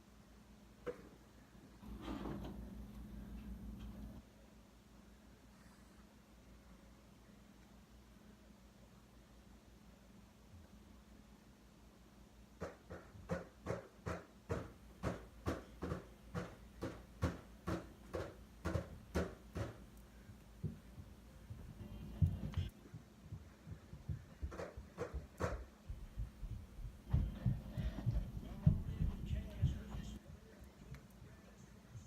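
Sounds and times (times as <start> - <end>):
rapid rhythmic panting: 21.5 - 30.4.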